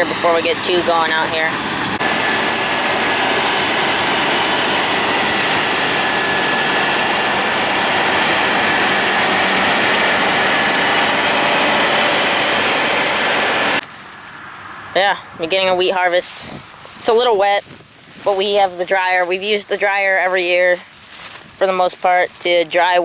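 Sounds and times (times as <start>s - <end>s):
faint steady whine: 0.0s - 13.9s
combine harvester running: 0.0s - 23.0s.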